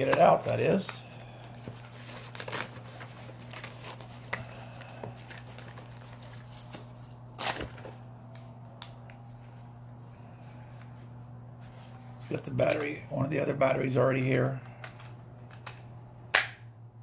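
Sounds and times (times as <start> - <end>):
packaging rustle: 0.0 - 8.1
steady low hum: 0.0 - 17.0.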